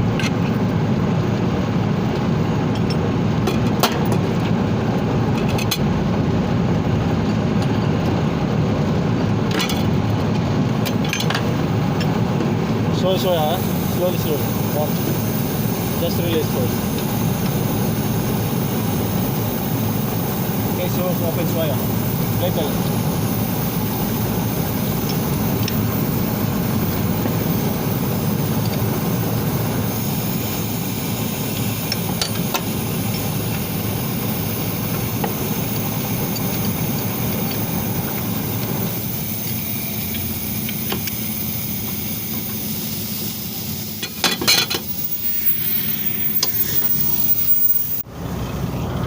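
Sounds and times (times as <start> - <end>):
machinery droning: 4.4 - 49.0
gas hissing from a valve: 10.9 - 48.1.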